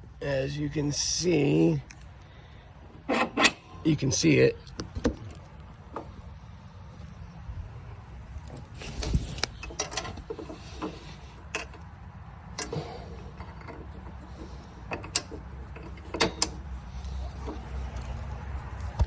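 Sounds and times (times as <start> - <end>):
metallic clicks and knocks of tools: 14.9 - 16.7.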